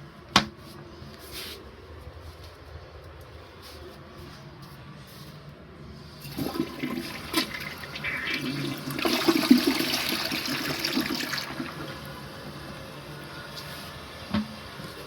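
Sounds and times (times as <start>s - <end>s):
toilet water rushing: 6.2s - 13.3s
toilet knocks and clicks: 14.3s - 14.6s.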